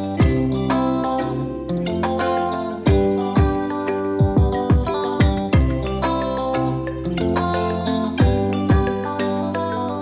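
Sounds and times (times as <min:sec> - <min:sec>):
deep beats: 0:00.0 - 0:01.0, 0:02.8 - 0:09.7
background music sustained notes: 0:00.0 - 0:10.0.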